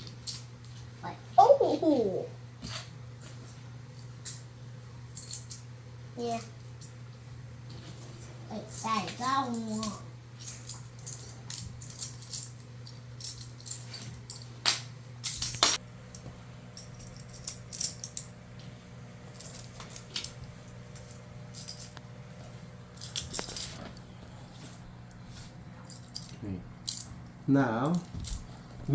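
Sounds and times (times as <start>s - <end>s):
steady low hum: 0.0s - 28.9s
toy pieces clicking and clattering: 0.1s - 0.5s, 5.2s - 5.6s, 8.7s - 14.5s.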